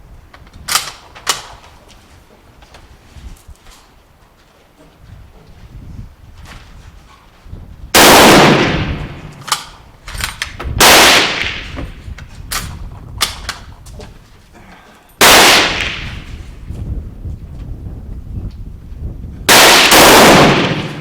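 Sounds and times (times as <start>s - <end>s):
rifle shots echoing: 8.0s - 9.7s, 10.8s - 11.8s, 15.2s - 16.4s, 19.5s - 21.0s
sharp clicks: 9.3s - 10.7s.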